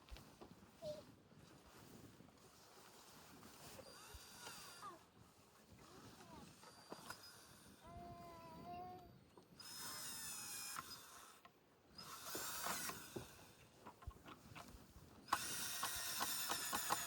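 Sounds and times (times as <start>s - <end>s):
power drill motor whining: 3.8s - 5.0s, 5.8s - 13.6s, 15.2s - 17.0s
rapid clicking clatter: 15.3s - 17.0s.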